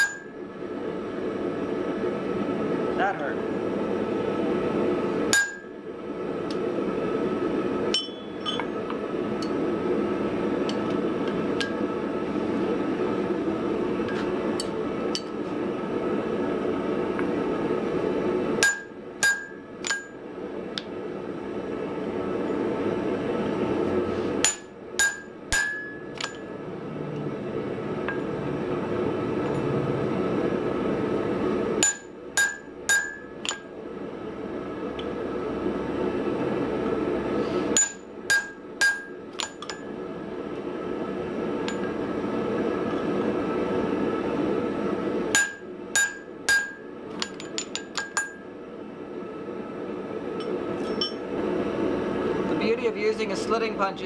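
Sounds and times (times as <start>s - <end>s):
hammer striking anvil: 0.0s - 0.3s, 5.4s - 5.7s, 8.0s - 8.7s, 18.6s - 20.1s, 24.4s - 26.5s, 31.8s - 33.6s, 37.8s - 39.8s, 45.4s - 48.4s.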